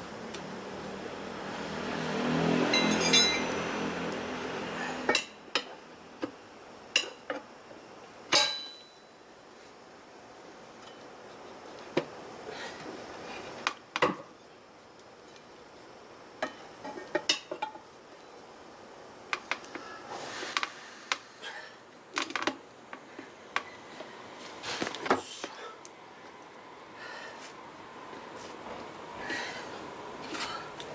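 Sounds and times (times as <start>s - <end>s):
metal tools clinking on wheel rim: 2.7s - 4.0s.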